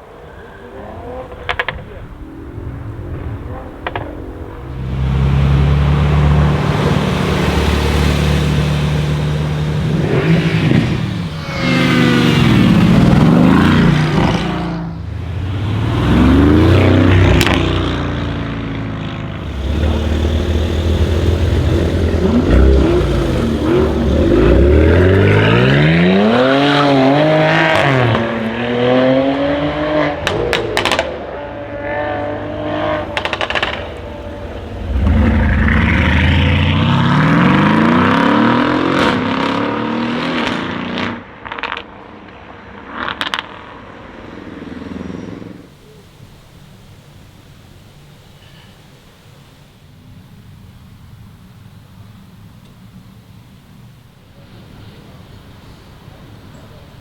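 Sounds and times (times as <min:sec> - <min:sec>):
car engine accelerating hard: 0:00.7 - 0:41.8
sharp exhaust cracks: 0:19.4 - 0:26.3, 0:32.3 - 0:38.3.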